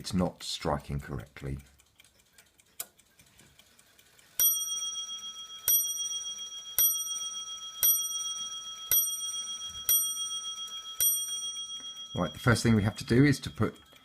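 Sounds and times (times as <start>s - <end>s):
clock bell striking: 4.4s - 13.9s.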